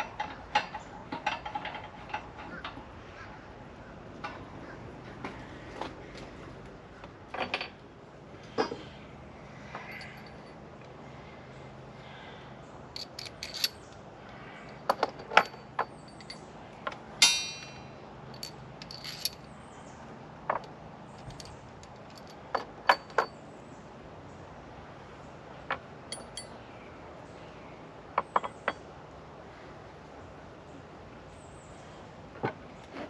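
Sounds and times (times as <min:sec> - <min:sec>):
loud ringing metallic clink: 0:09.8 - 0:10.6, 0:17.2 - 0:19.4
small metal parts clinking: 0:09.8 - 0:10.6, 0:13.0 - 0:19.6, 0:20.5 - 0:23.4, 0:25.7 - 0:26.6.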